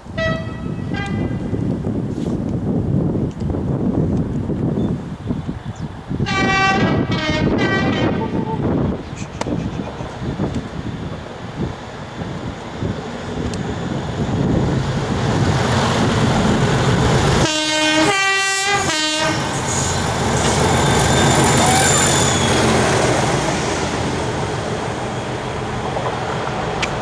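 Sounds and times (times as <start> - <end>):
diesel locomotive engine under load: 0.0 - 27.0
two-tone horn: 0.2 - 1.5, 6.2 - 8.6, 17.4 - 19.6.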